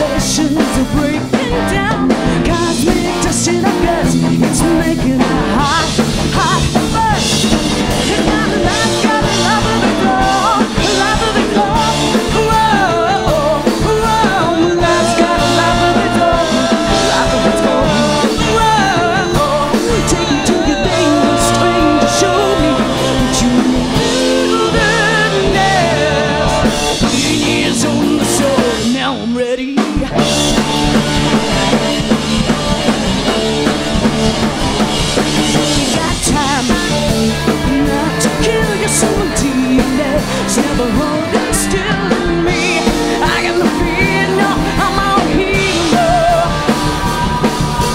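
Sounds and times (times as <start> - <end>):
rock band playing live: 0.0 - 47.9.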